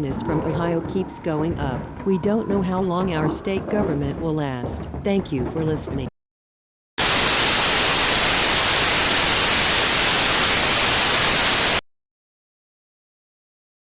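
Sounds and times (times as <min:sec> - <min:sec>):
white noise static hiss: 0:07.0 - 0:11.8.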